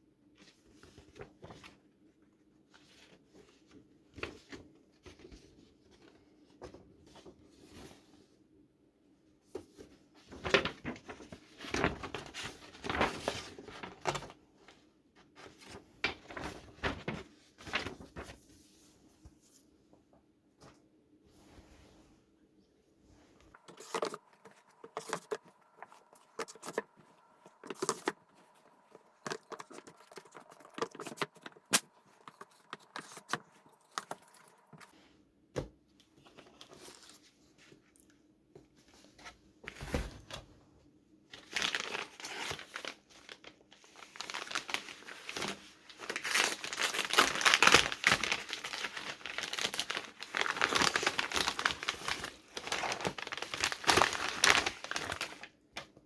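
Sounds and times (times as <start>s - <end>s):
packaging crinkling: 23.5s - 34.9s, 41.4s - 55.5s.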